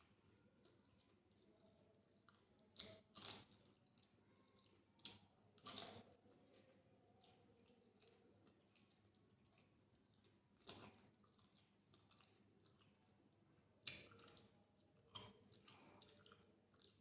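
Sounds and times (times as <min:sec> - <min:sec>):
close-up chewing: 0:00.6 - 0:01.5, 0:02.1 - 0:17.0.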